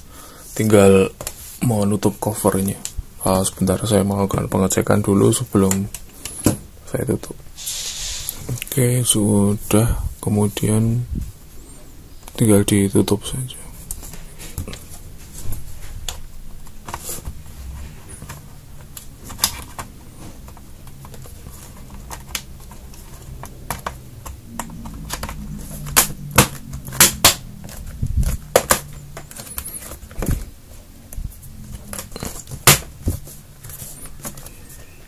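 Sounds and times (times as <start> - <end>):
handling rumble: 13.6 - 34.0.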